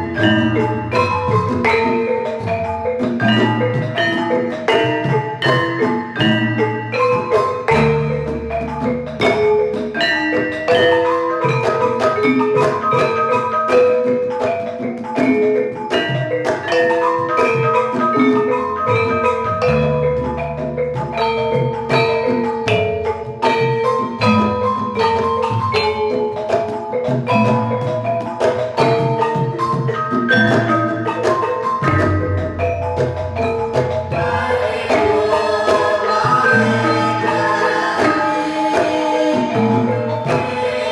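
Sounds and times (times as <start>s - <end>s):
drums: 0.0s - 40.9s
gamelan melody on metal keys: 0.0s - 40.9s.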